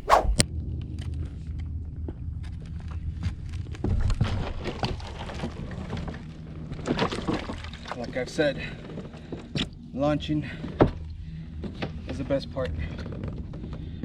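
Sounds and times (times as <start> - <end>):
wind rumble on microphone: 0.0 - 0.4.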